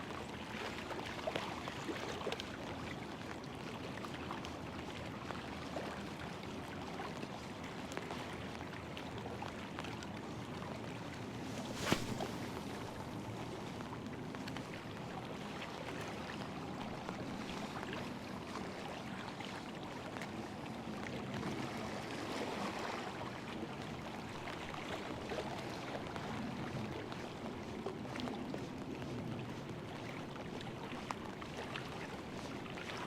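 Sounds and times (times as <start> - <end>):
river water washing on rocks: 11.3 - 13.0.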